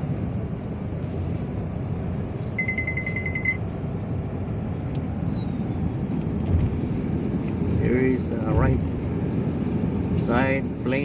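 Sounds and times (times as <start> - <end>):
vehicle road and engine noise: 0.0 - 11.0
rapid electronic beeping: 2.6 - 3.6.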